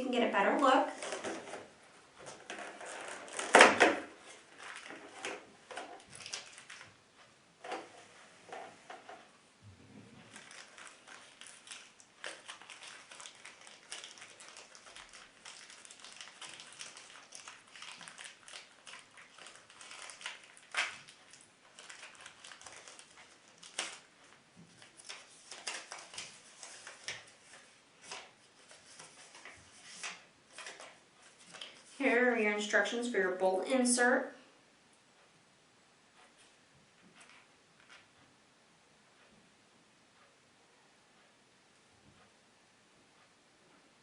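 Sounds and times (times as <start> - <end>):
packaging rustling and crinkling: 0.9 - 8.3, 10.2 - 32.0.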